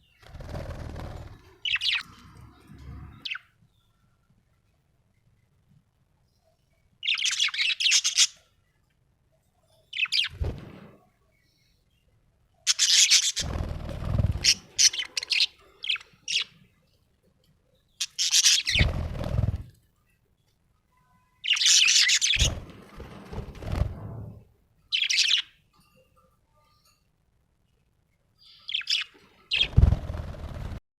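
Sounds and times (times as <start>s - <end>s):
budgerigar chirping and chattering: 18.0s - 18.9s.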